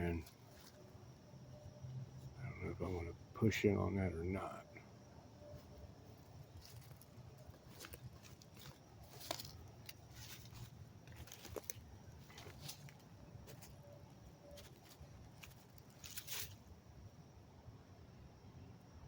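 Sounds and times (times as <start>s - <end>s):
dry leaves crunching and rustling: 6.6s - 13.8s, 14.6s - 16.6s.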